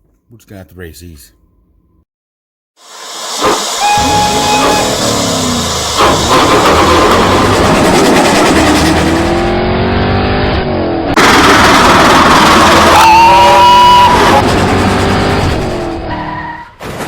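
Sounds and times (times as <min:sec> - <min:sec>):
rushing noise: 0:02.8 - 0:10.5, 0:11.1 - 0:16.2
race car engine revving: 0:04.0 - 0:16.1.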